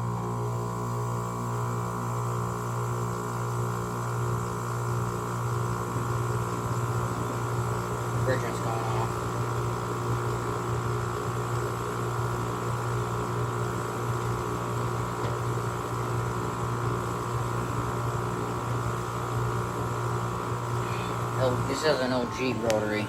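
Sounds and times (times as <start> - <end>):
air conditioner humming: 0.0 - 23.0
high whine: 20.7 - 23.0.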